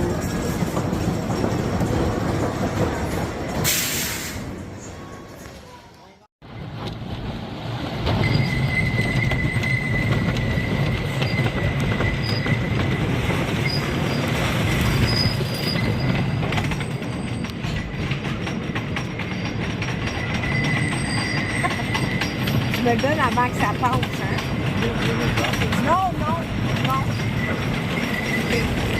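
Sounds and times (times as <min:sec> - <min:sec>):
roller coaster rumble: 0:00.0 - 0:28.9
wheel squeal: 0:08.0 - 0:28.9.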